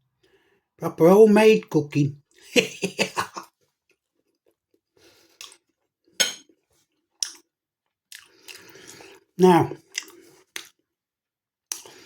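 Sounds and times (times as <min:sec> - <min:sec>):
toast crunching while chewed: 0:03.7 - 0:10.9.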